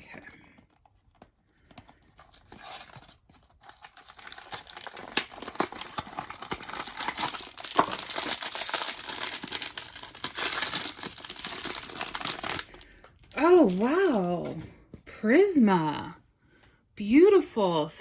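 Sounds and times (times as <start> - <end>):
crinkly wrapping torn open: 1.0 - 14.1.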